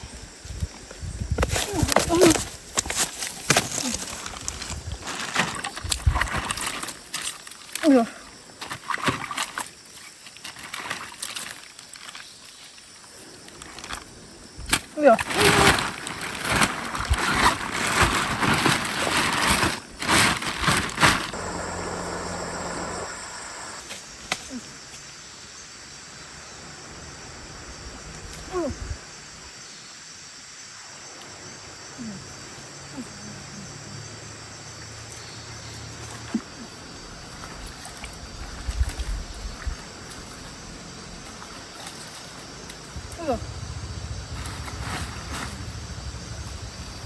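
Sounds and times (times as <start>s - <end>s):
stream rushing: 21.3s - 23.8s.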